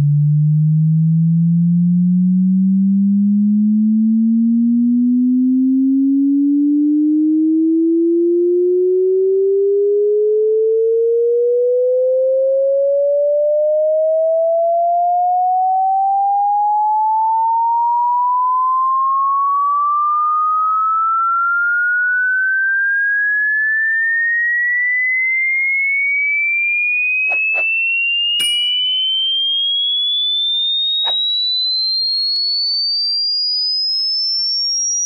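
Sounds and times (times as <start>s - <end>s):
rising sine test tone: 0.0s - 6.9s, 28.4s - 35.0s.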